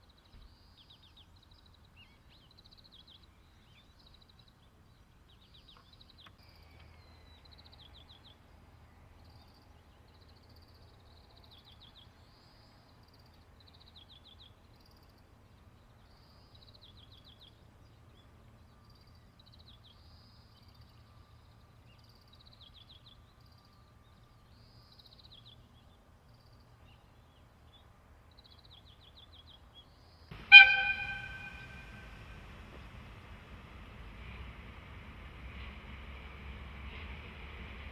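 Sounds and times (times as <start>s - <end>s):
approaching train noise: 30.3s - 37.9s
locomotive whistle blast: 30.4s - 32.4s.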